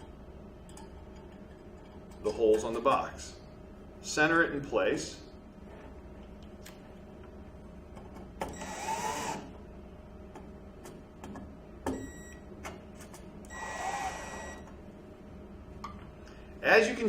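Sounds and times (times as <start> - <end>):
power screwdriver driving screws: 8.6 - 9.4.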